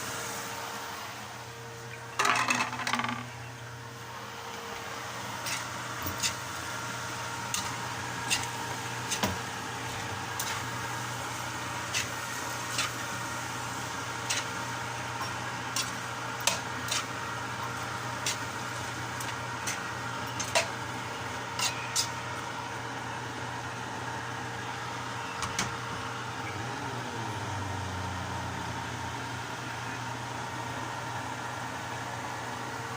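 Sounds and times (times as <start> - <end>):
steady hum: 0.0 - 32.9
food popping in a pot: 2.2 - 3.4.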